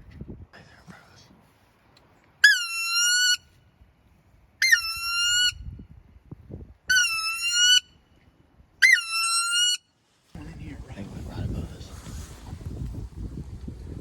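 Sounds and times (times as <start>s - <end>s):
high squealing whistle calls: 2.4s - 3.4s, 4.6s - 5.6s, 6.9s - 8.0s, 8.8s - 9.9s.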